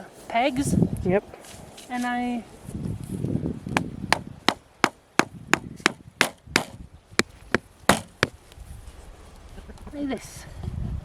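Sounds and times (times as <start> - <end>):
tool striking wooden peg: 3.8 - 8.4.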